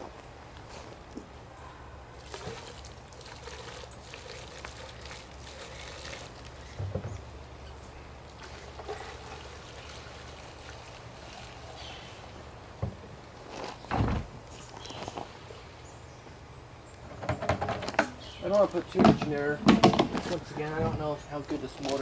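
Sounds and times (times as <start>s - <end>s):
fuel trickling into tank: 2.1s - 13.9s.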